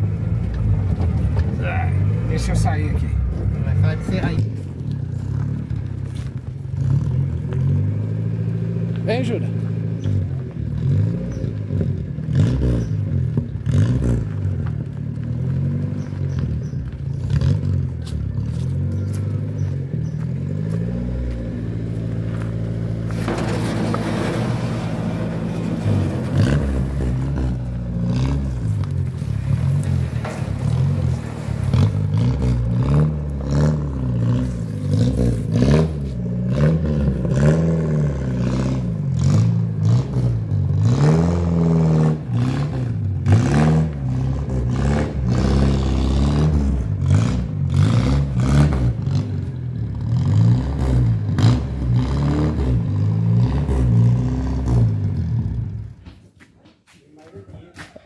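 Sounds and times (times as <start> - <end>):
car engine running at low revs: 0.0 - 56.2
clatter and clicks: 22.3 - 27.7.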